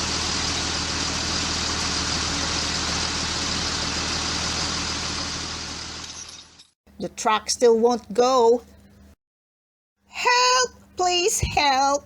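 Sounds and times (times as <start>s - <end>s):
vehicle engines running: 0.0s - 6.6s.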